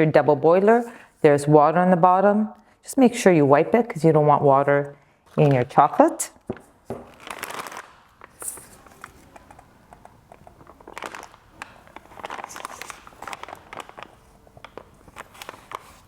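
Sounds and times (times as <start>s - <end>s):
plastic piping bag crinkling: 5.4s - 16.0s.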